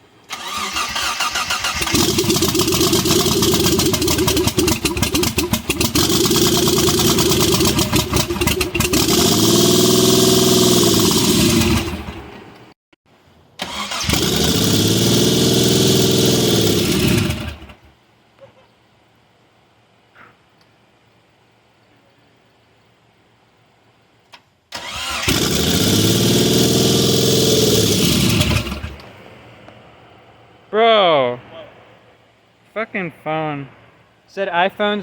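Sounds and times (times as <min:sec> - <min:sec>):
car engine starting and revving: 0:00.3 - 0:12.4, 0:13.6 - 0:17.9, 0:24.7 - 0:29.3.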